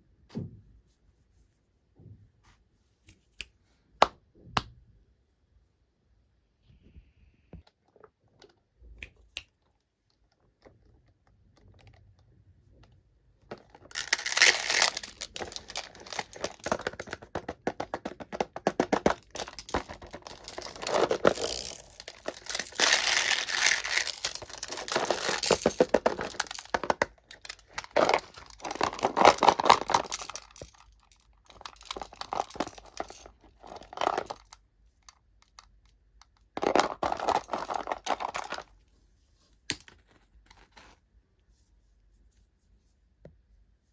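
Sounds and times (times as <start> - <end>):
packaging crinkling and tearing: 13.9 - 17.1, 19.0 - 34.5.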